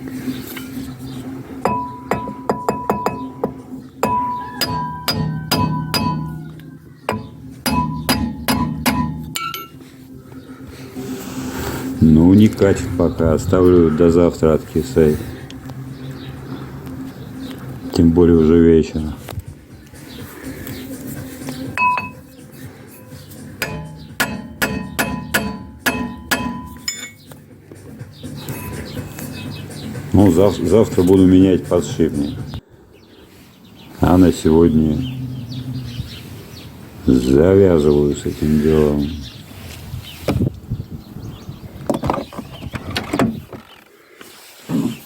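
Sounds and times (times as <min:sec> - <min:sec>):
hammer striking steel: 0:01.6 - 0:06.5, 0:07.1 - 0:09.8, 0:21.8 - 0:22.2, 0:23.6 - 0:27.2
metal tools clinking on metal: 0:07.1 - 0:09.8, 0:21.8 - 0:22.3, 0:23.0 - 0:27.3.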